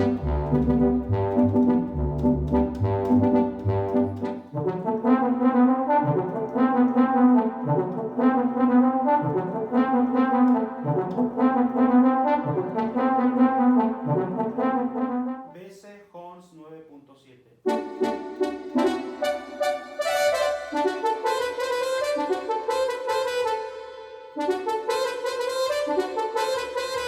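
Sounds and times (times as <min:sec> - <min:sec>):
low synthesizer note: 0:00.0 - 0:04.4
synthesizer brass chords: 0:00.0 - 0:15.6, 0:17.6 - 0:27.0.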